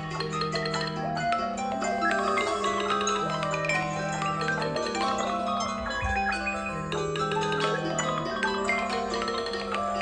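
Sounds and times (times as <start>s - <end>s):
phone ringtone marimba tune: 0.0s - 10.0s.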